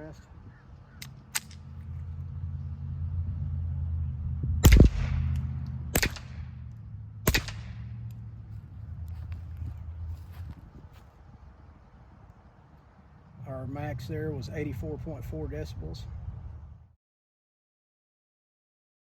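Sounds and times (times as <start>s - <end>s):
low steady rumble: 0.0s - 17.0s
suppressed pistol shots: 4.6s - 6.6s, 7.2s - 8.1s.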